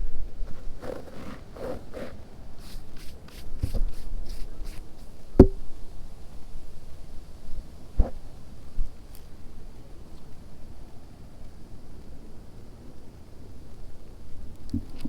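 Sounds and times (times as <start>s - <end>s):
sharp knocks: 5.4s - 5.6s.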